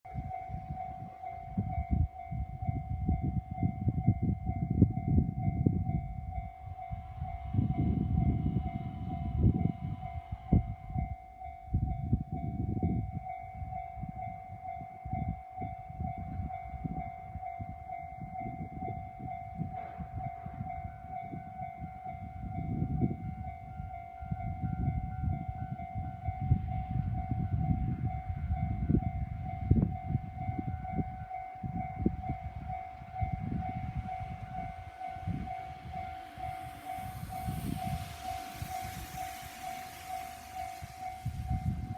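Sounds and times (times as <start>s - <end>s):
train rumble passing: 0.1s - 41.9s
horn-like tone: 32.0s - 41.9s.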